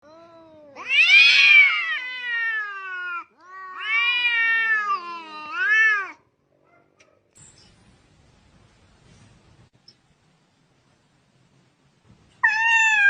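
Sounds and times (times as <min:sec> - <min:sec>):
cat meowing: 0:00.0 - 0:06.2, 0:12.4 - 0:13.0.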